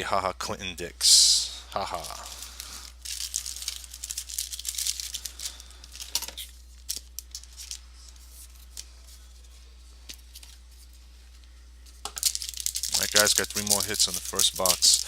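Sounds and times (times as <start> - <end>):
steady low hum: 0.0 - 15.0
card pack wrapper crinkling: 1.9 - 9.5, 12.1 - 15.0.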